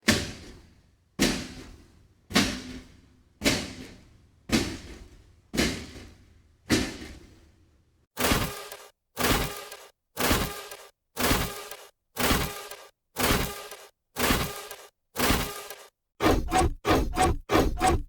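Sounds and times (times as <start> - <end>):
buzzy mechanical pulses: 8.2 - 18.0
heavy mechanical footfalls: 8.2 - 18.0.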